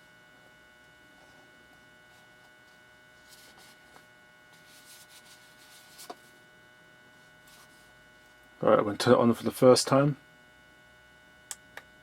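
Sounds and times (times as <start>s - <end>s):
steady electrical hum: 0.0s - 12.0s
faint rustling of handling: 1.1s - 6.4s, 7.1s - 8.5s.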